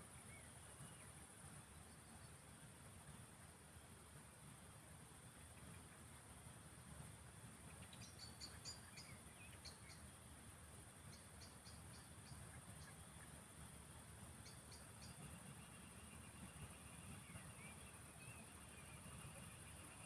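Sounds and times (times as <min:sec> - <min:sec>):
insect drone: 0:06.2 - 0:20.0.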